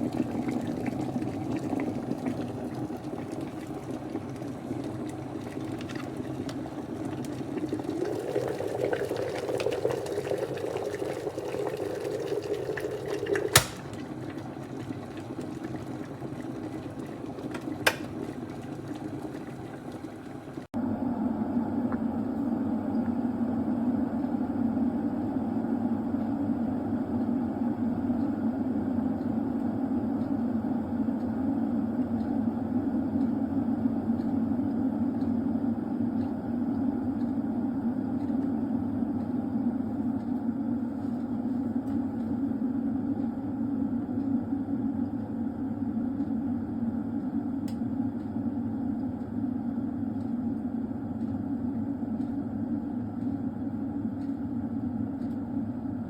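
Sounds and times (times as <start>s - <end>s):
kettle water hissing: 0.0s - 20.7s
kettle low rumble: 0.0s - 56.0s
kettle click: 13.0s - 14.2s, 17.4s - 18.5s.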